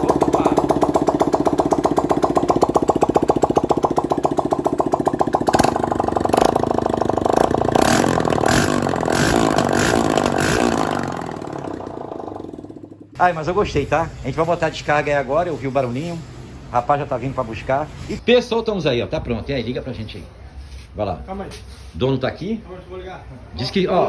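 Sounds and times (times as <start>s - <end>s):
motorcycle engine revving without exhaust: 0.0s - 13.2s.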